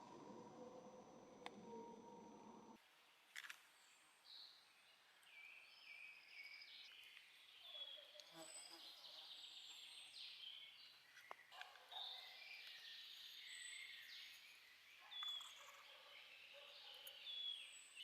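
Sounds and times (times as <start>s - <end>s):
birds singing: 5.2s - 18.0s.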